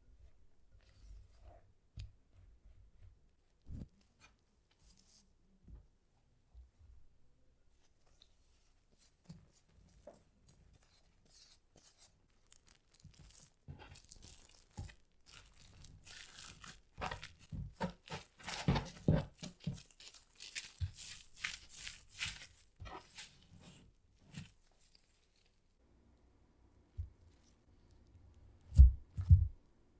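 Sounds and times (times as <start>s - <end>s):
crinkling and rustling: 7.8s - 25.6s.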